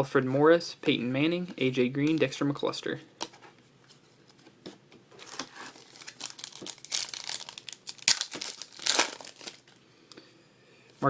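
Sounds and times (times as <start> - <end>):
wrapper crinkling and tearing: 5.2 - 9.8.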